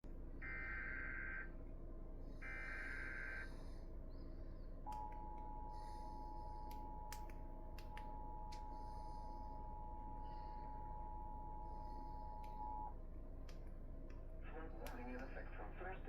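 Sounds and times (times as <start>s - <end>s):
sharp clicks: 6.6s - 8.7s.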